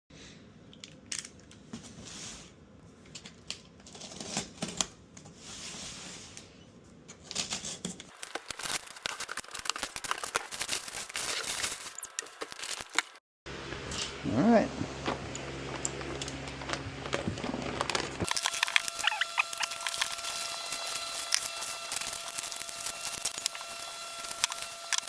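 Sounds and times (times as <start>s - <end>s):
cardboard and tape tearing: 7.3s - 13.2s, 17.5s - 25.0s
dense crackling and clicking: 8.1s - 13.2s, 17.8s - 25.0s
wrapping crinkling: 8.1s - 13.2s, 15.9s - 25.0s.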